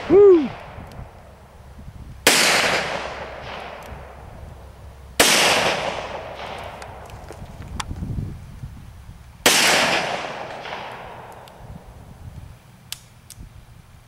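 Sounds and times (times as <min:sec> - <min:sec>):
revolver shots with echo: 0:02.3 - 0:04.3, 0:09.5 - 0:11.5.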